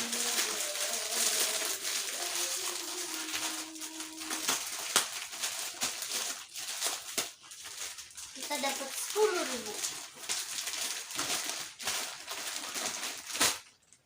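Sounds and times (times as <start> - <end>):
packaging and cloth rustling: 0.0 - 14.0.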